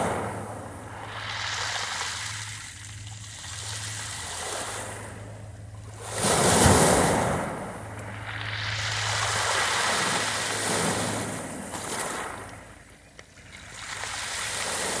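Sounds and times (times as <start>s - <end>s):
sea waves washing onto shore: 6.1s - 12.6s.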